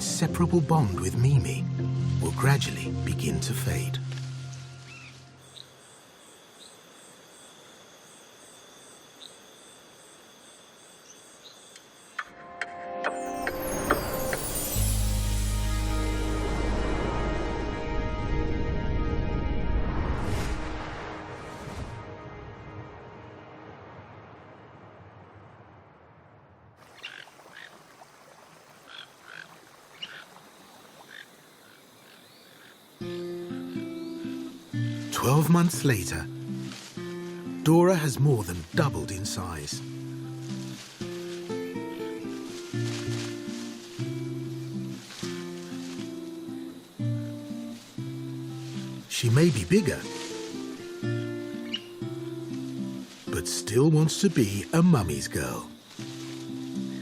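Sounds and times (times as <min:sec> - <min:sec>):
forest ambience: 0:00.0 - 0:17.7, 0:20.8 - 0:57.0
short high insect chirps: 0:04.5 - 0:12.3, 0:30.0 - 0:35.2, 0:55.5 - 0:57.0
insects trilling in chorus: 0:04.6 - 0:12.3, 0:28.8 - 0:57.0.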